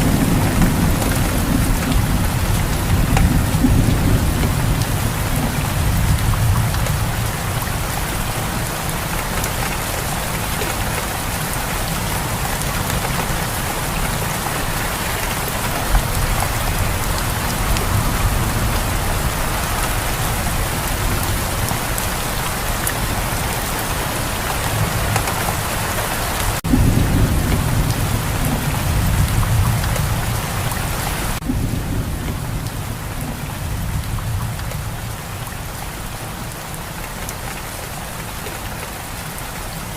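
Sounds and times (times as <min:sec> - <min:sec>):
low rolling thunder: 0:00.0 - 0:09.1, 0:26.6 - 0:35.4
heavy rain: 0:00.0 - 0:39.9.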